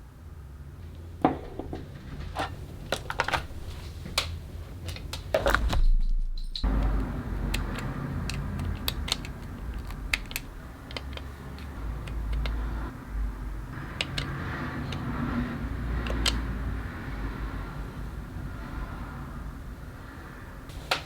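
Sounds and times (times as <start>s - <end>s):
light clicks and taps of packaging: 6.6s - 12.7s.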